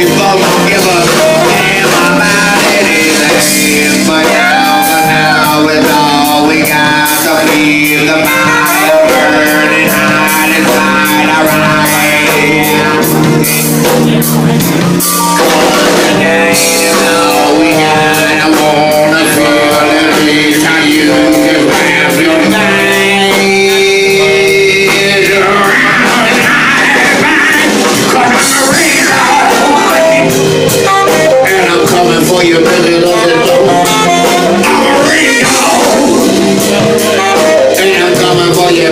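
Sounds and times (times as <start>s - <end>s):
drum kit: 0.0s - 38.9s
guitar: 0.0s - 38.9s.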